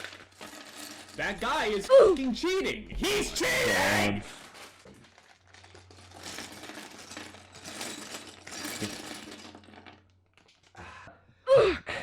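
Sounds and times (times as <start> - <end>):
plastic pieces rattling and clicking: 0.0 - 2.4, 4.3 - 10.8.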